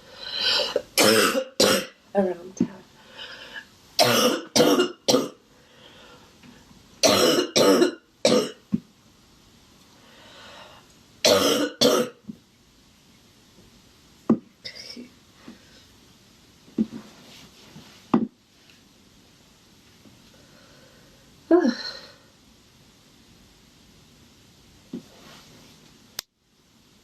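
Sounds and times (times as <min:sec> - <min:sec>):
woman coughing: 0:00.7 - 0:02.0, 0:04.0 - 0:05.4, 0:07.0 - 0:08.6, 0:11.3 - 0:12.2.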